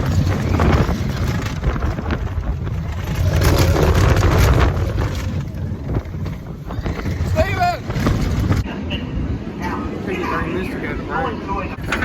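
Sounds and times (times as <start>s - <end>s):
low motor rumble: 0.0s - 8.6s
wind buffeting microphone: 0.0s - 12.0s.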